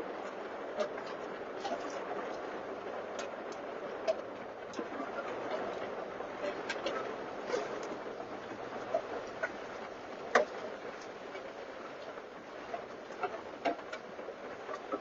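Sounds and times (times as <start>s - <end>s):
driving noise: 0.0s - 15.0s
rain hiss: 0.0s - 15.0s.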